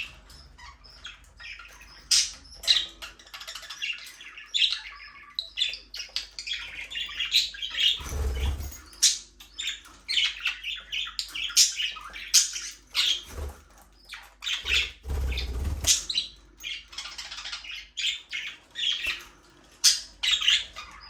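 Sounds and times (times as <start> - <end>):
budgerigars chirping and chattering: 0.0 - 21.0.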